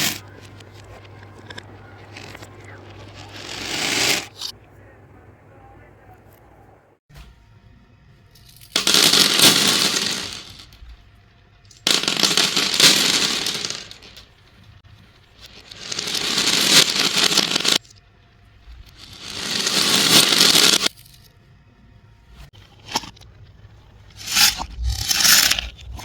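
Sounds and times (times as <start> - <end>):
beads pouring and clattering: 0.0 - 4.4, 8.4 - 10.8, 11.7 - 14.3, 15.4 - 17.8, 18.8 - 21.2, 24.2 - 26.0.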